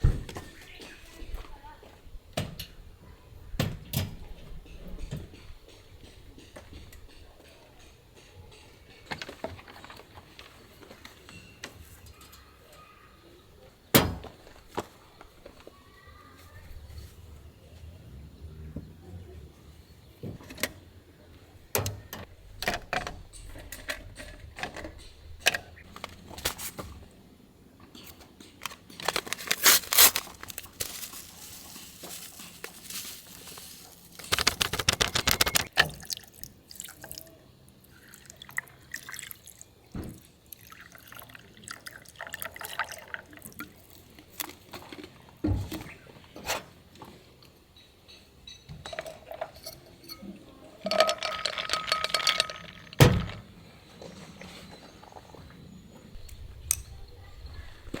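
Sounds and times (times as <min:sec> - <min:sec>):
handling clicks and knocks: 0:27.8 - 0:35.8, 0:48.0 - 0:54.2.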